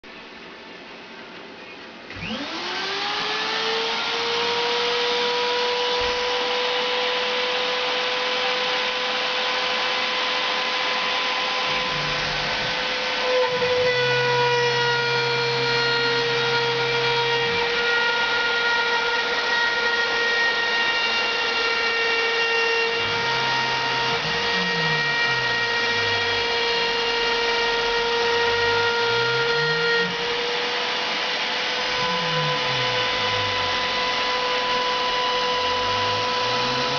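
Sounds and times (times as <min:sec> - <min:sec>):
router spindle high-pitched whine: 0:02.1 - 0:36.9
axis motors humming: 0:07.1 - 0:30.8, 0:31.5 - 0:36.9.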